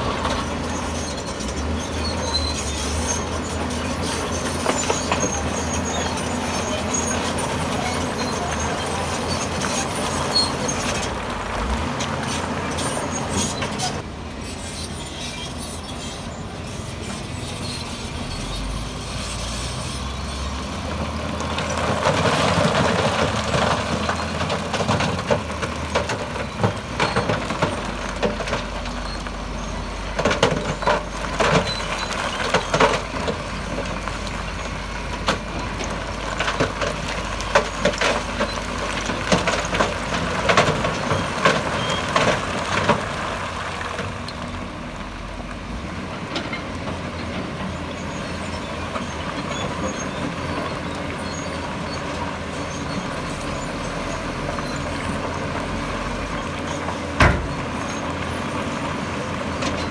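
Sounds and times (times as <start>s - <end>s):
diesel engine running: 0.0s - 59.9s
rock sliding: 21.4s - 44.2s.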